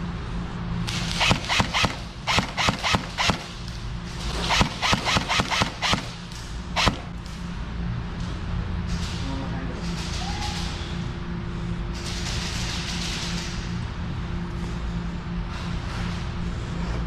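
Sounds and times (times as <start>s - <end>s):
steady low hum: 0.0s - 17.0s
airsoft gun firing: 0.9s - 3.6s, 4.3s - 7.2s.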